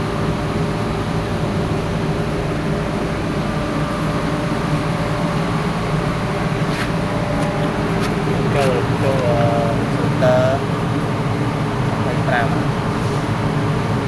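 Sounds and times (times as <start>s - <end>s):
air compressor humming: 1.5s - 14.0s.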